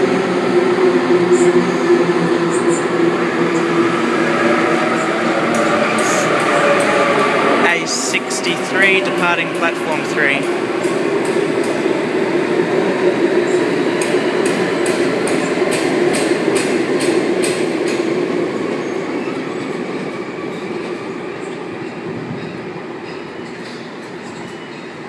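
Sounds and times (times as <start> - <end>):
electric train rumble and hum: 0.0 - 25.0
train wheels clicking: 4.8 - 11.9, 14.0 - 18.1.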